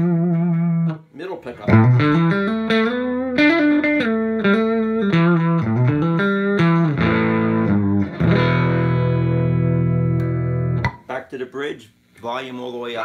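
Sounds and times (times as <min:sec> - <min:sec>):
clean electric guitar notes and chord: 0:01.7 - 0:11.0.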